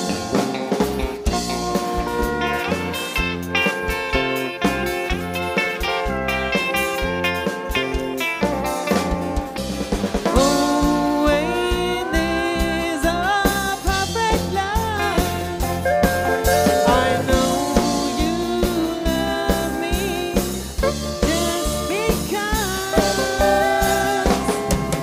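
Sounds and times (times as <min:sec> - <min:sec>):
drum kit steady beat: 0:00.0 - 0:25.0
lead guitar bending notes: 0:00.0 - 0:25.0.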